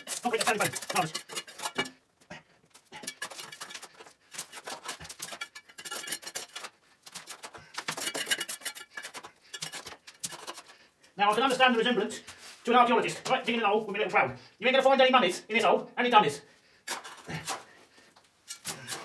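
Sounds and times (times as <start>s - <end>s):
hand trowel scraping soil: 0.0s - 1.9s, 2.8s - 10.8s, 16.9s - 17.8s, 18.5s - 19.0s.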